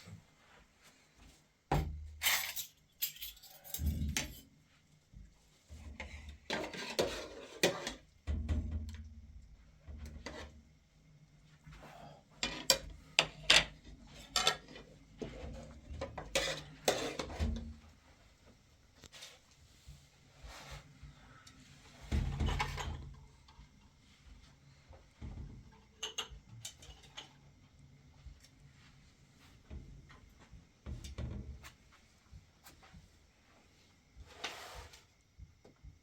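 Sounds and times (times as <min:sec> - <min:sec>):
dishes and cutlery clattering: 0:02.2 - 0:04.4.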